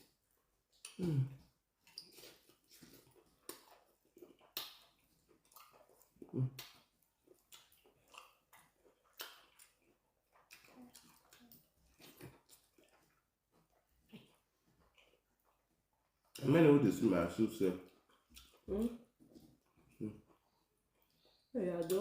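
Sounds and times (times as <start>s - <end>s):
chewing and mouth smacks: 0.0s - 16.6s, 17.7s - 22.0s.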